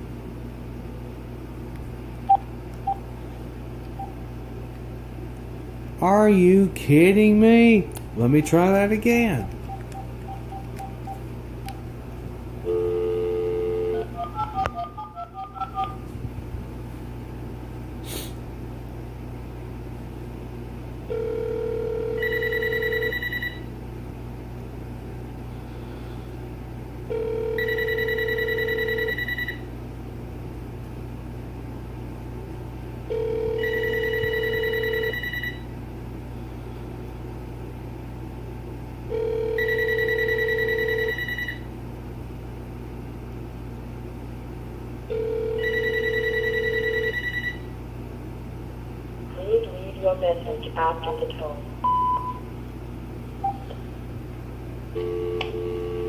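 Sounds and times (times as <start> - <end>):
touch-tone dialing: 9.6 - 11.2
phone ringback tone: 12.7 - 16.0, 21.1 - 23.6, 27.1 - 29.6, 33.1 - 35.6, 39.1 - 41.6, 45.1 - 47.6, 55.0 - 56.0
cordless phone electronic ringer: 21.2 - 23.6, 27.2 - 29.6, 45.2 - 47.6, 55.0 - 56.0.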